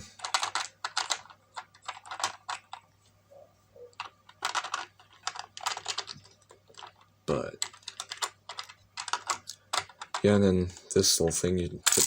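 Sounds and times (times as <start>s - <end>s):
plastic toy bricks clicking: 0.2s - 2.8s, 4.0s - 7.0s, 7.6s - 10.3s.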